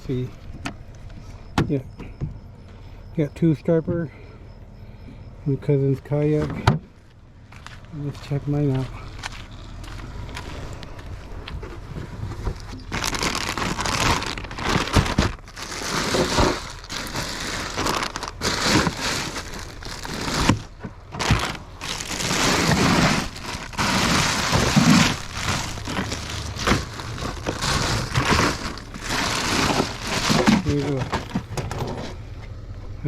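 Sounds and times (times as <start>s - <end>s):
rustling and crinkling: 7.0s - 32.2s.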